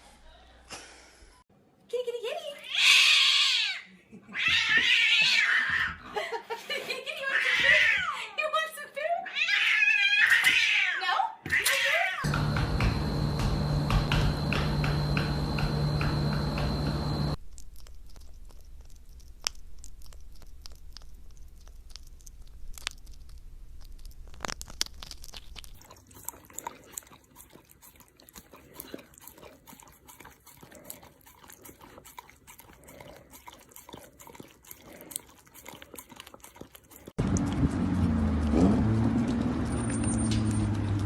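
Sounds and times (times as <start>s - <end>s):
animal chewing and crunching: 12.3s - 41.0s.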